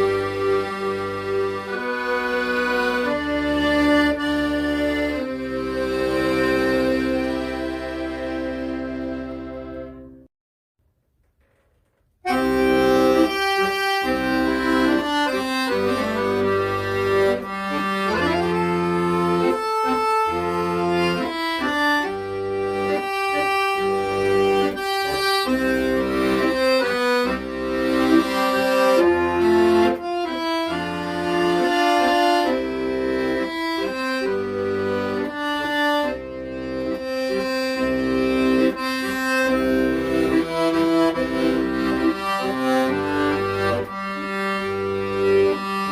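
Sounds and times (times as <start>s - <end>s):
accordion playing melody: 0.0s - 10.3s, 12.2s - 45.9s.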